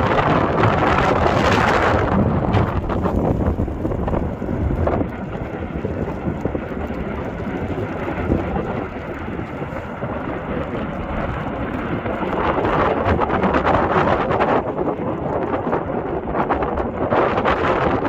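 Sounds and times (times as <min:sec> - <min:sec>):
volcano low rumbling roar: 0:00.0 - 0:18.0
wind buffeting microphone: 0:00.0 - 0:18.0.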